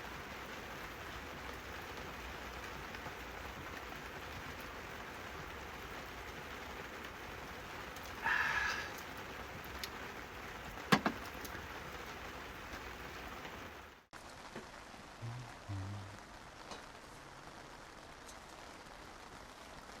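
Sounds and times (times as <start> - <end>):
steady rain falling: 0.0 - 20.0
short high-pitched sound: 15.2 - 16.2.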